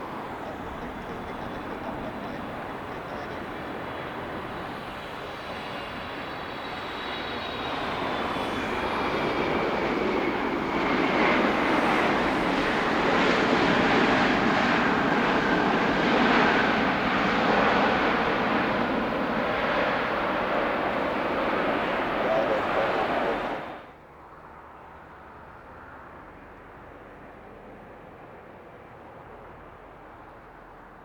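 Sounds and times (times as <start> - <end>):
jet engines rushing: 0.0 - 24.4
high engine whine: 0.0 - 25.7.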